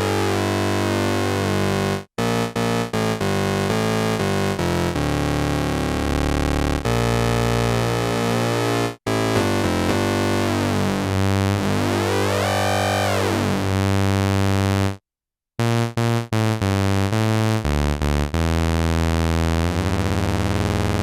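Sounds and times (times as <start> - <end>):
synthesizer notes: 8.4 - 13.6.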